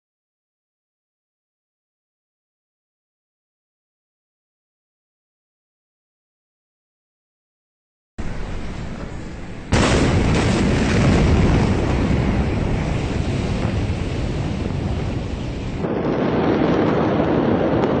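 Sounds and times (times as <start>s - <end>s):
low continuous rumbling: 8.2s - 15.9s
loud explosion blast: 8.2s - 18.0s.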